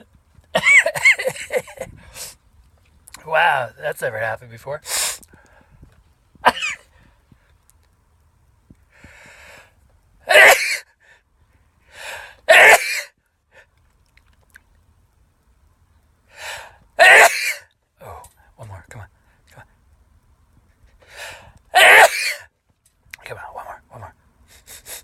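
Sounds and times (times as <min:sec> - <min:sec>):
quick in-breath: 0:04.8 - 0:05.9, 0:08.9 - 0:09.8, 0:11.0 - 0:12.4, 0:16.3 - 0:16.8, 0:21.0 - 0:21.6
man sneezing loudly: 0:06.4 - 0:06.8, 0:10.3 - 0:10.8, 0:12.5 - 0:13.1, 0:17.0 - 0:17.7, 0:21.7 - 0:22.5.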